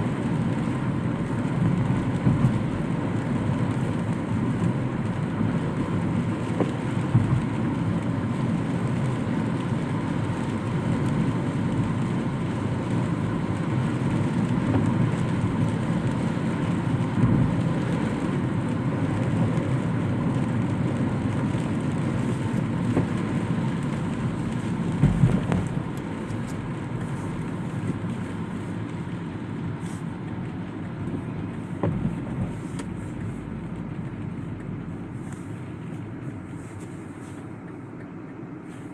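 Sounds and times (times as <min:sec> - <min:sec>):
vehicle rumble: 0:00.0 - 0:38.9.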